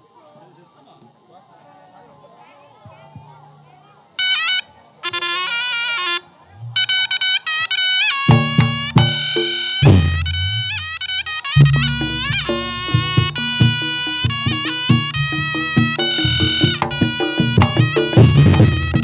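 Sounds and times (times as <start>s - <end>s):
nasal shawm melody: 2.8s - 19.0s
low drum and bass notes: 8.3s - 11.0s, 11.6s - 19.0s.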